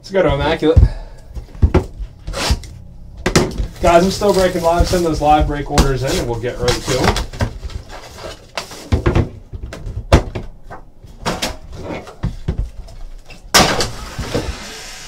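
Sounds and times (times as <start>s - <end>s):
packaging rustling scrape: 3.8s - 5.3s.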